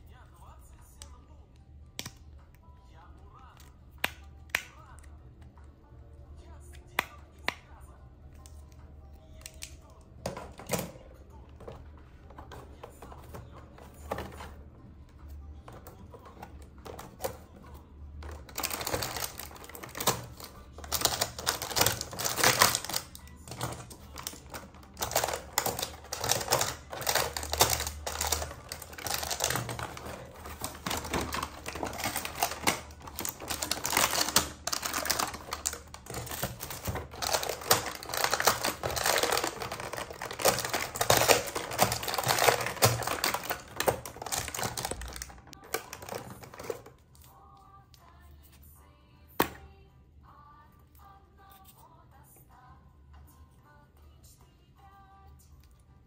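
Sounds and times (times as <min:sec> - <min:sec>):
packaging crinkling and clicking: 0:18.2 - 0:47.3.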